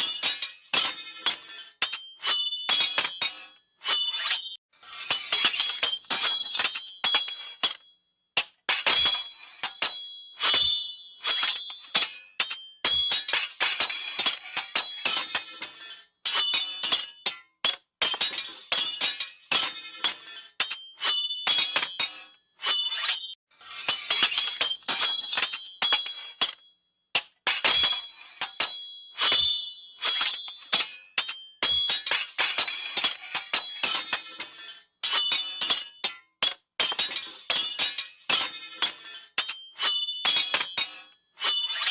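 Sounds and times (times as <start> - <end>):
sword blades clashing: 0.0 - 41.9.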